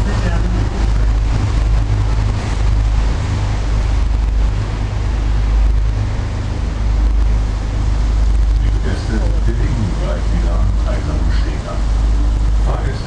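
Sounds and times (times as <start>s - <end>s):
boat engine drone: 0.0s - 13.0s
wind noise on microphone: 0.0s - 13.0s.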